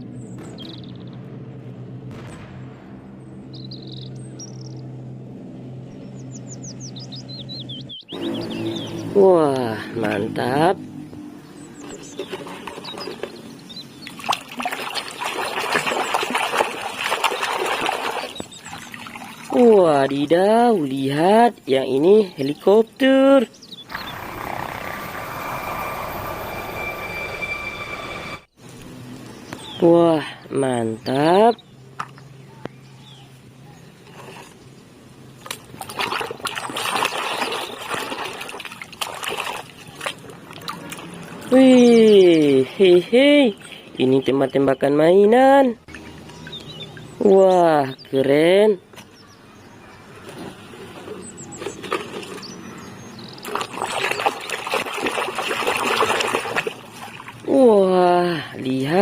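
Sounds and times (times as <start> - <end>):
water splashing and trickling: 8.1 - 23.1, 35.2 - 44.8, 45.4 - 48.2, 50.1 - 59.0.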